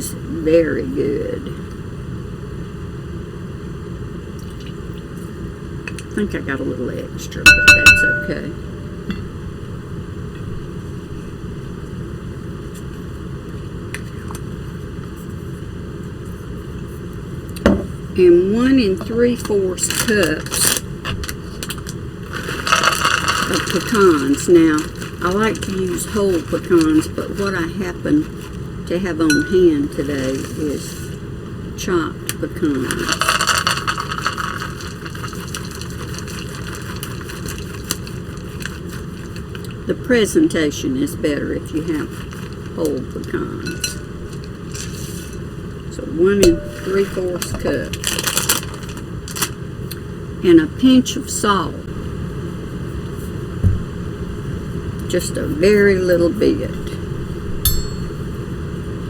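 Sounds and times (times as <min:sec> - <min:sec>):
steady background hum: 0:00.0 - 0:59.0
nuts pattering into a bowl: 0:21.6 - 0:27.6, 0:32.8 - 0:39.4.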